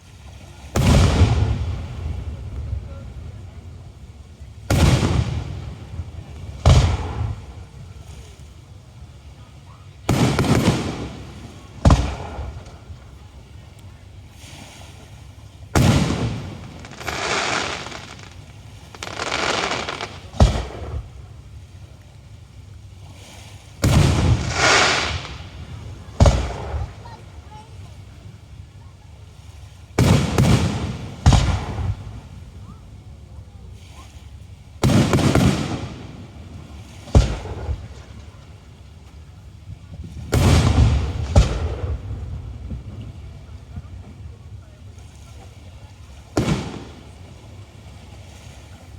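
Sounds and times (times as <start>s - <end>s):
crackling hiss of fireworks: 0.0s - 48.9s
firework shell booms: 0.8s - 3.5s, 4.7s - 8.1s, 10.1s - 13.1s, 15.8s - 21.4s, 23.8s - 27.2s, 30.0s - 32.4s, 34.8s - 38.5s, 40.1s - 44.1s, 46.4s - 47.4s.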